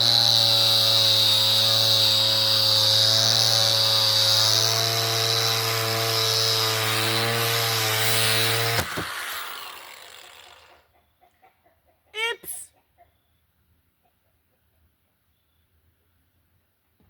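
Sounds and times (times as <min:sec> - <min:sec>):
angle grinder sanding wood: 0:00.0 - 0:10.8.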